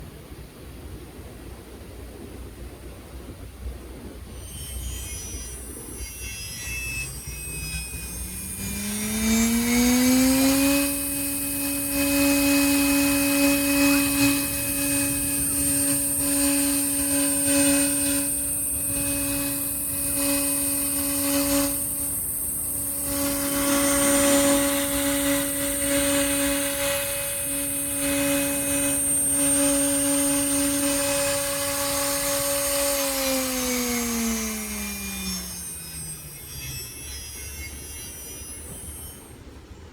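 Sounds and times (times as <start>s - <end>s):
router spindle whine: 3.8s - 39.9s
router cutting wood: 4.3s - 39.5s.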